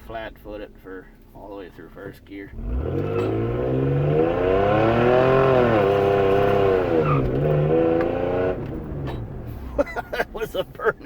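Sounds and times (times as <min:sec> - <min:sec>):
engine revving at full throttle: 0:02.5 - 0:09.6
tires spinning: 0:02.5 - 0:10.9.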